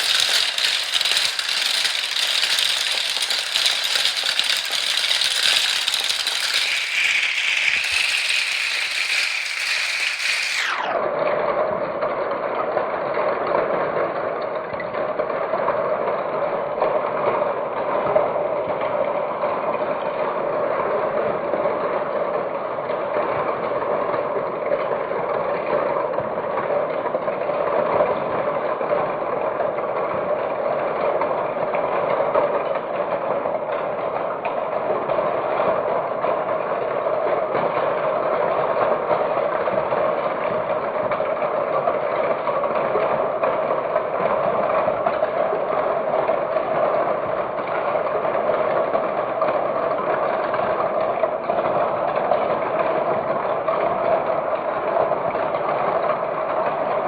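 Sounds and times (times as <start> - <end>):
balls rattling along marble run: 0.0 - 11.0.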